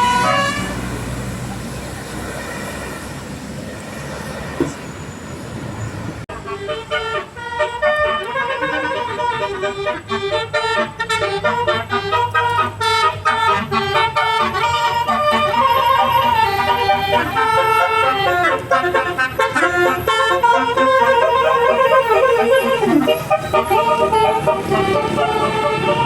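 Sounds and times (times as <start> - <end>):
musical bus air horn tune: 0.0 - 1.3, 6.3 - 26.0
road traffic: 0.0 - 26.0.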